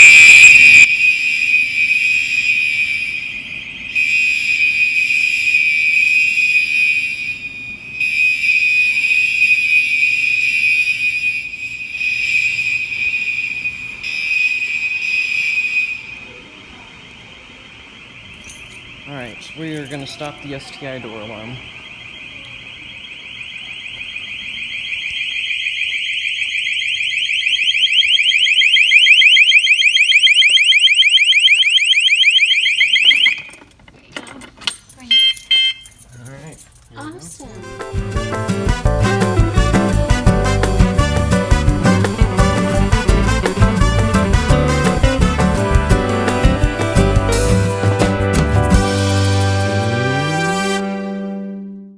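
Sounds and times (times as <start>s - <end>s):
door alarm high-pitched tone: 0.0s - 33.7s, 35.0s - 36.0s.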